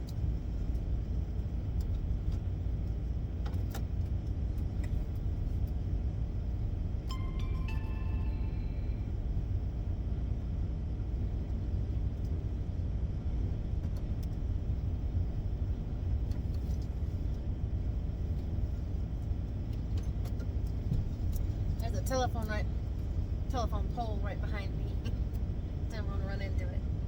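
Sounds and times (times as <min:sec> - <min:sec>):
van engine running: 0:00.0 - 0:27.0
short beeping tones: 0:07.1 - 0:09.2.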